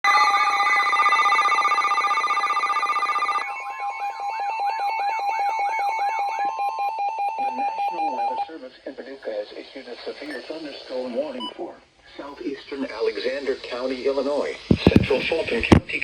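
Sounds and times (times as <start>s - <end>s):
electronic multi-tone alarm: 0.1s - 8.5s.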